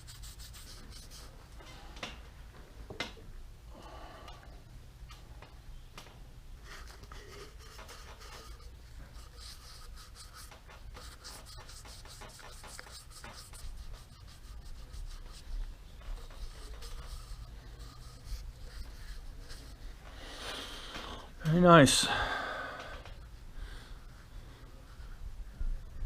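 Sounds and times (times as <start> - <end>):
steady low hum: 0.0 - 26.0
cloth rubbing on wood: 6.7 - 19.9.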